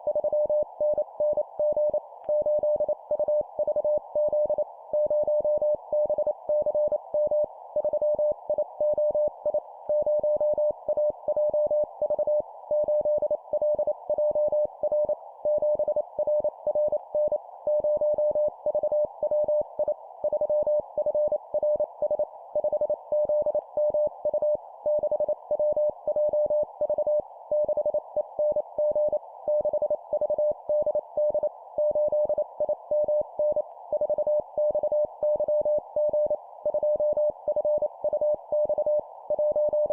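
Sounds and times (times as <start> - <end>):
morse code beeps: 9.9 - 39.9.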